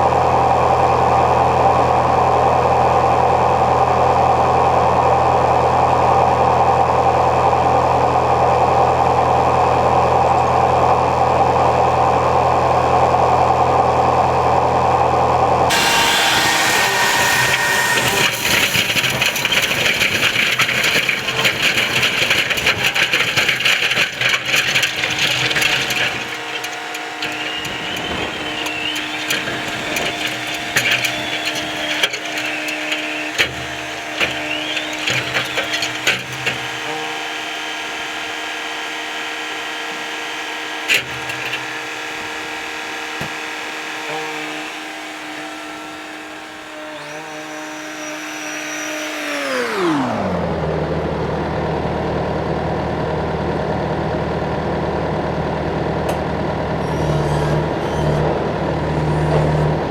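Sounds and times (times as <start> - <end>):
combine harvester whine and hum: 0.0 - 59.9
light rattles and clicks: 17.2 - 36.9.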